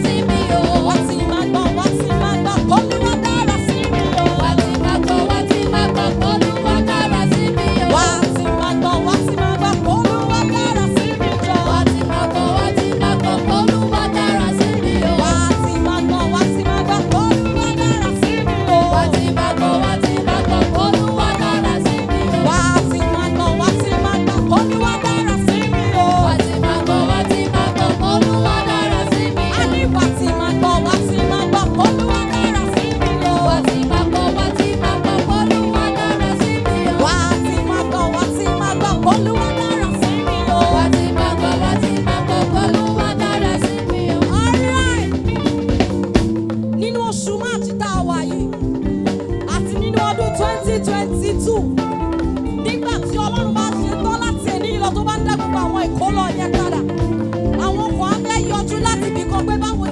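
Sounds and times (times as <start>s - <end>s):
drums dance beat: 0.0s - 47.0s, 47.8s - 59.9s
upbeat band music: 0.0s - 59.9s.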